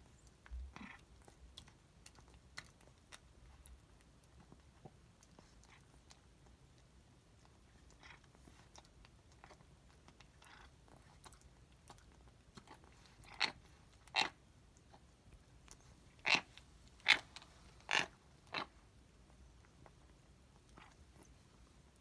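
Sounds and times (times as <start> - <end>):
cat chewing food: 0.0 - 22.0
cat grinding teeth: 16.2 - 18.7.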